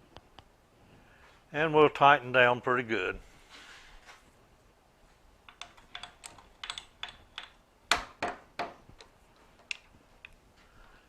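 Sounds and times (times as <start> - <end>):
sharp metallic taps and knocks: 5.4 - 10.4.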